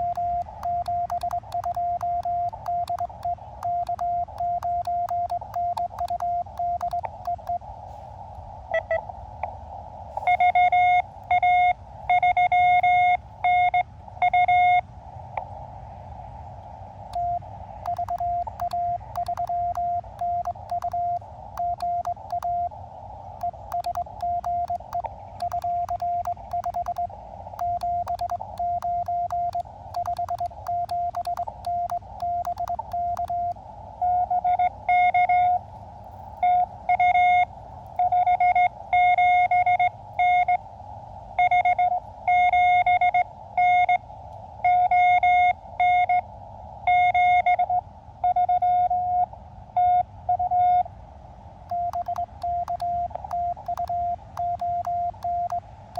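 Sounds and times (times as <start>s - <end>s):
morse code sidetone: 0.0s - 7.6s, 17.2s - 22.7s, 23.4s - 35.6s, 51.7s - 55.6s
paddle contacts clicking: 0.0s - 7.6s, 17.2s - 22.7s, 23.4s - 33.6s, 51.7s - 55.6s
receiver hiss: 0.0s - 13.5s, 17.1s - 37.0s, 51.7s - 55.9s.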